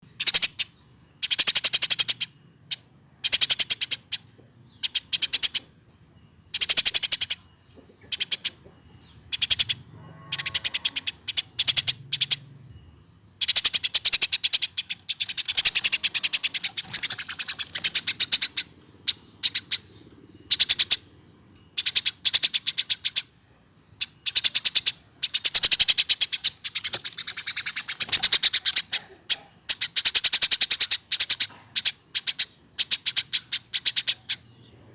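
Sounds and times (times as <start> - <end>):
sparrow chirping: 0.0 - 34.9.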